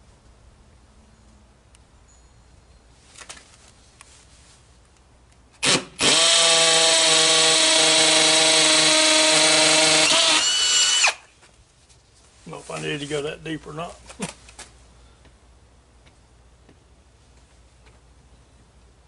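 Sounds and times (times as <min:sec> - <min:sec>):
hammer drill boring into wall: 0:05.6 - 0:11.2.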